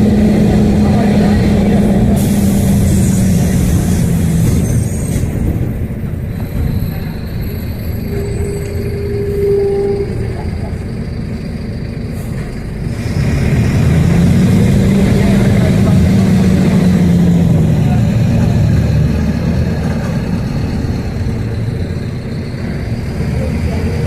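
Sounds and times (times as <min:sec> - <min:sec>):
vehicle engine rumbling: 0:00.0 - 0:24.0
brief steady tone: 0:08.1 - 0:10.7.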